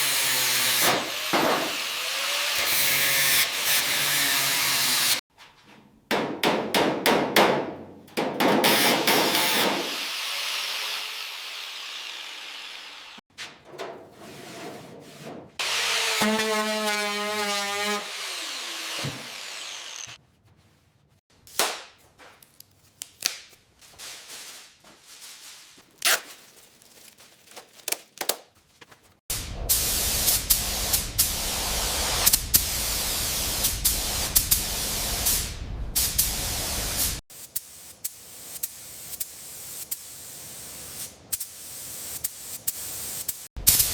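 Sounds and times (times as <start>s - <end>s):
rubbing and scraping: 13.3s - 21.2s.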